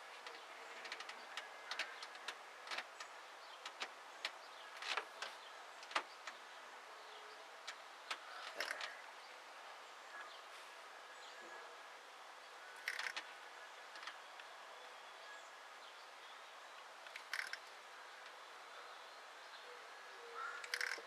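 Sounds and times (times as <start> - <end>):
light clicks and ticks: 0.2 - 6.5, 7.6 - 9.1, 12.8 - 14.5, 17.0 - 18.4, 20.6 - 21.0.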